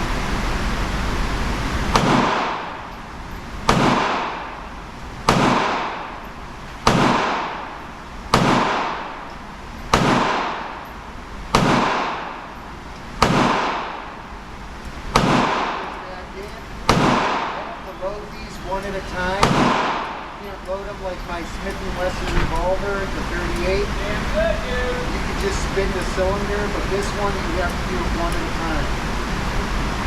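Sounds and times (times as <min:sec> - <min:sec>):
sharp echoing bangs: 0:01.5 - 0:24.4.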